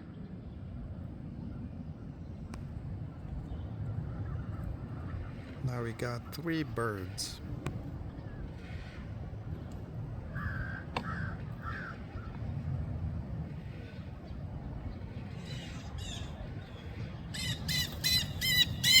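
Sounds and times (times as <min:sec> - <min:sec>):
crows cawing: 0:10.3 - 0:12.4.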